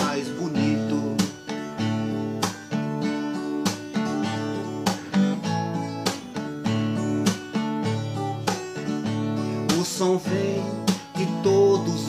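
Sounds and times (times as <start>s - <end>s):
person singing: 0.0s - 1.6s, 9.7s - 12.0s
acoustic guitar strumming: 0.0s - 12.0s.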